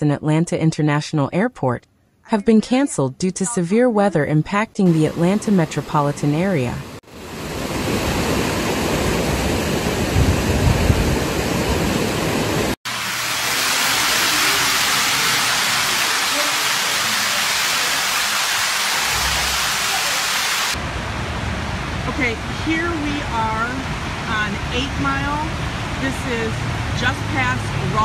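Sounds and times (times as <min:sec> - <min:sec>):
heavy rain hissing: 0:04.9 - 0:26.8
rushing water: 0:04.9 - 0:28.0.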